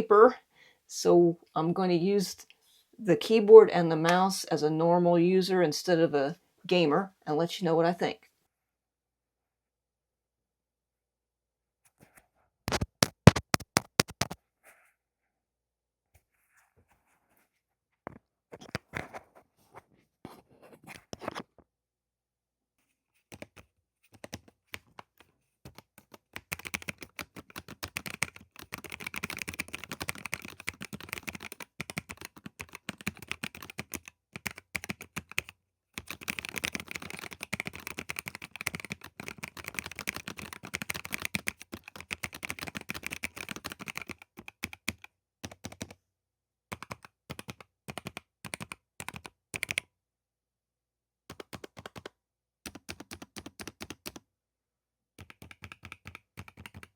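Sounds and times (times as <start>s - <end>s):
mechanical keyboard typing: 12.7s - 14.4s, 23.3s - 23.6s, 24.2s - 24.8s, 25.7s - 46.0s, 46.7s - 49.8s, 51.3s - 52.1s, 52.7s - 54.2s, 55.2s - 56.9s.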